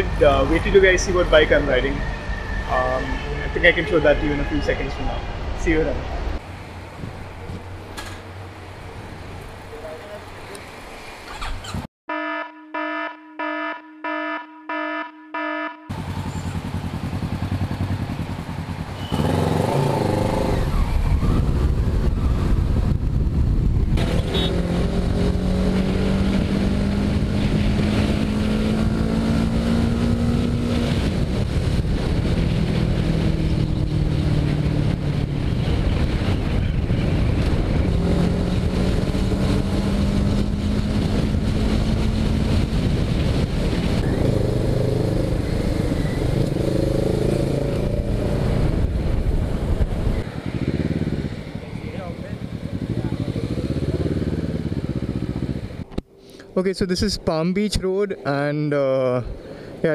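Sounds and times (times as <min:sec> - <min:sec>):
motorcycle engine accelerating: 0:14.7 - 0:56.1
wind rushing: 0:19.9 - 0:55.9.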